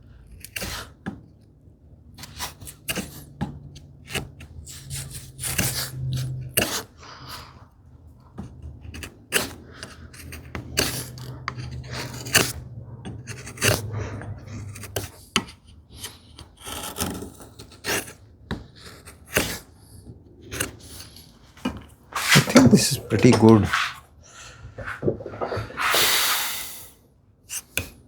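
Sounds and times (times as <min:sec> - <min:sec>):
hand tools scraping wood: 0:02.2 - 0:07.6, 0:08.2 - 0:19.8, 0:20.5 - 0:24.0, 0:24.7 - 0:26.2.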